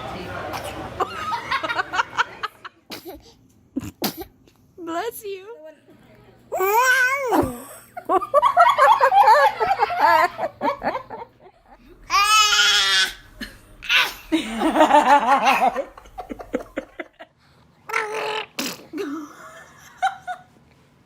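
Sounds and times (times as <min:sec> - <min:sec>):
people laughing: 0:00.4 - 0:02.8, 0:07.7 - 0:12.0, 0:13.3 - 0:17.3, 0:19.0 - 0:20.5.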